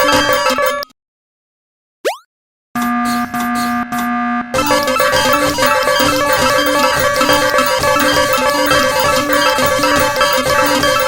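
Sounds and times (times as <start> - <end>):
railroad crossing bell ringing: 0.0 - 0.8, 4.6 - 11.0.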